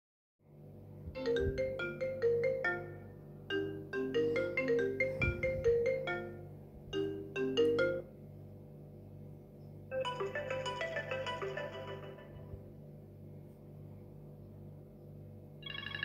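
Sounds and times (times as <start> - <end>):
steady low hum: 0.4 - 16.0
marimba ringtone melody: 1.2 - 8.2, 9.9 - 12.5.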